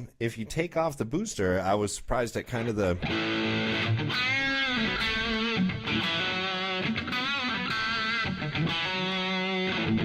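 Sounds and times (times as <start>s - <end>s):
distorted electric guitar: 3.0s - 10.0s.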